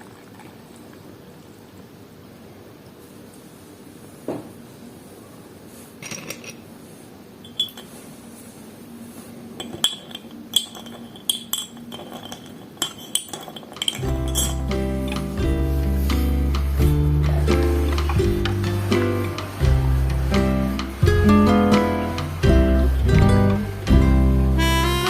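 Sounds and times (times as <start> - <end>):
utensils clinking against dishes: 6.0 - 6.7, 7.4 - 8.0, 9.6 - 19.8
acoustic guitar music: 14.0 - 25.0.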